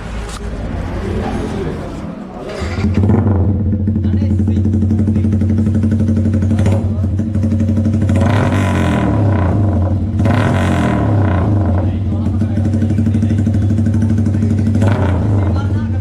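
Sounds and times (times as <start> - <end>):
motorcycle engine idling: 2.6 - 16.0.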